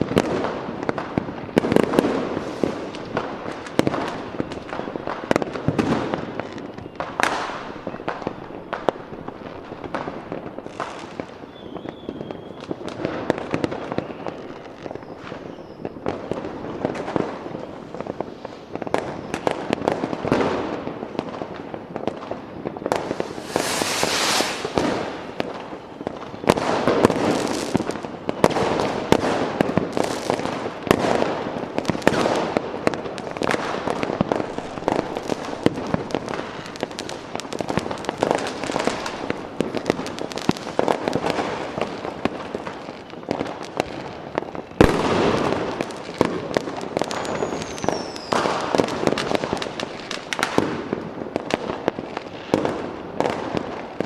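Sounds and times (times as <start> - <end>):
fireworks bangs and crackling: 0.0 - 54.0
falling whistle: 11.5 - 12.7, 23.2 - 24.9, 47.3 - 48.3.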